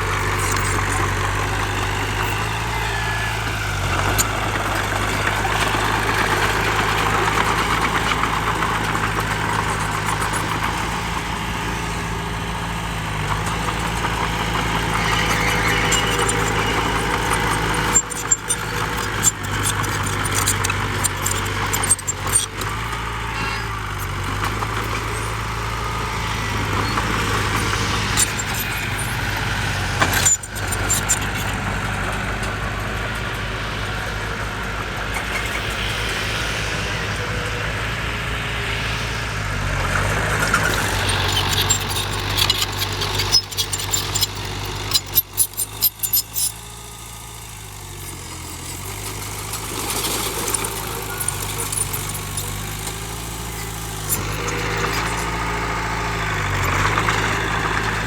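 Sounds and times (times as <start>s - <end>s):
diesel machinery engine: 0.0s - 58.0s
sharp clatters: 13.2s - 58.0s.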